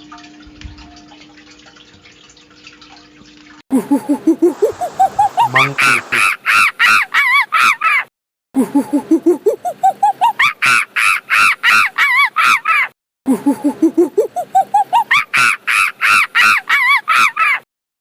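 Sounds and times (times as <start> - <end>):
monkey hooting calls: 4.5 - 6.3.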